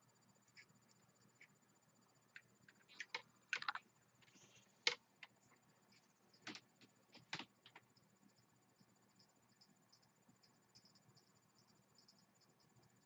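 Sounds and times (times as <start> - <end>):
plastic cable pieces clicking: 2.4 - 3.8.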